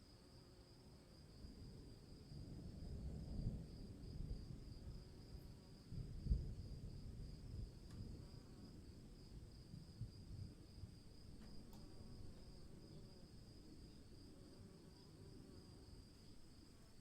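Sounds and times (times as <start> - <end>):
crickets chirping: 0.0 - 17.0.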